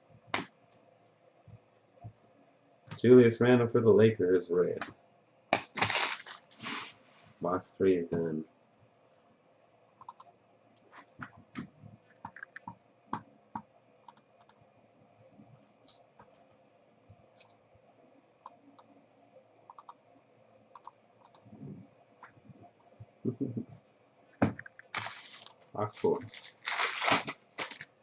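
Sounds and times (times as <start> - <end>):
card packs rustling: 5.6 - 7.0, 24.9 - 28.0.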